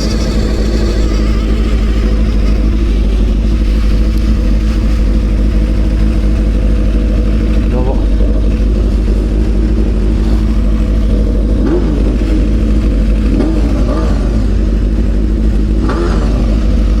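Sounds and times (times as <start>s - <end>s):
squeaky rising and falling glides: 0.0s - 5.4s
motorcycle engine idling: 0.0s - 17.0s.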